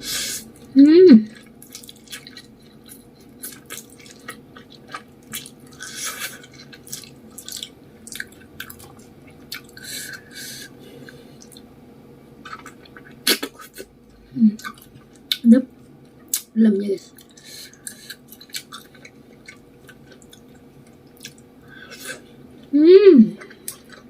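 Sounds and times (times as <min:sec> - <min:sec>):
person chewing noodles: 0:00.1 - 0:11.7, 0:14.6 - 0:15.4, 0:17.2 - 0:22.3, 0:23.4 - 0:24.0.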